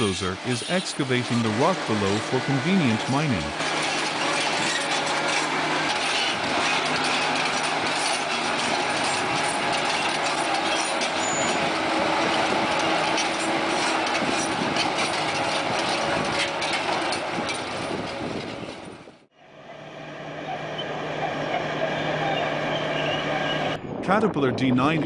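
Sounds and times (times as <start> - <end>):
steel tracks clanking on rock: 0.0 - 19.1
bulldozer engine noise: 0.0 - 25.0.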